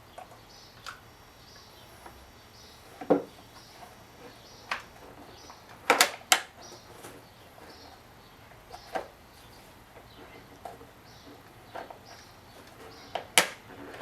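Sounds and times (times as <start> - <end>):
sharp clicks and knocks: 9.9 - 14.0.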